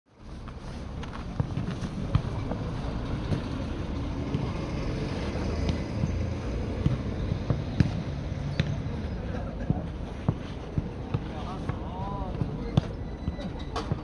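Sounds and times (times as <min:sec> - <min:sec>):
low rumbling background noise: 0:00.1 - 0:14.0
ball being kicked: 0:01.4 - 0:02.5, 0:04.2 - 0:04.6.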